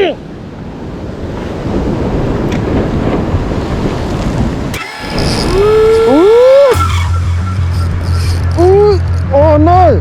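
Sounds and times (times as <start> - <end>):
surf washing against rocks: 0.0 - 6.6
wind buffeting microphone: 0.0 - 8.0.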